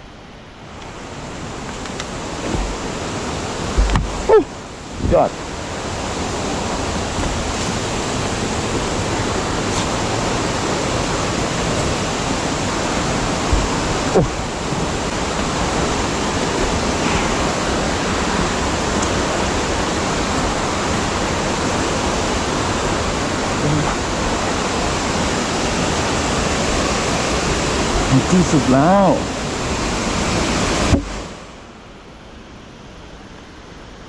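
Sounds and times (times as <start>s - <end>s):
waterfall rushing: 0.0s - 31.7s
brief bumps: 3.7s - 4.3s.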